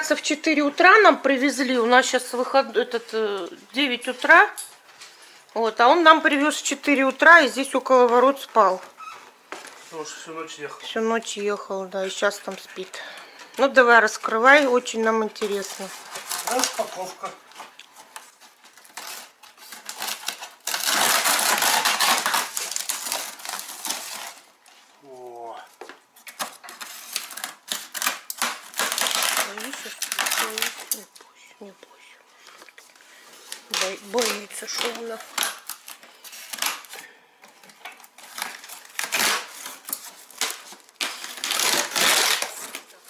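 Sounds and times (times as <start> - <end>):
packaging being torn open: 15.9 - 17.2, 18.1 - 24.6, 26.3 - 31.2, 33.5 - 37.1, 37.7 - 43.0.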